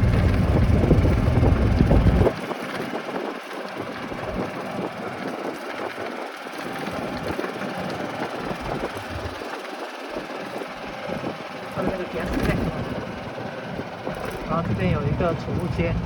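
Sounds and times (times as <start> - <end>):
loud low rumble: 0.0 - 2.4, 8.6 - 9.4, 14.4 - 16.0
car road and engine noise: 0.0 - 16.0.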